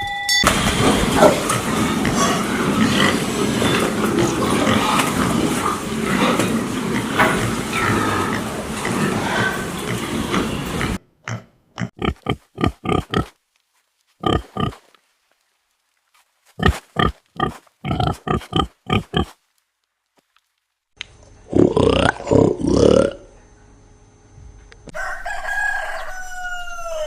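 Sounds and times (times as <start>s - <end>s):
dense noisy clamour: 0.4s - 11.0s
pig grunting: 0.8s - 13.3s, 14.2s - 14.8s, 16.6s - 19.4s, 21.5s - 23.3s.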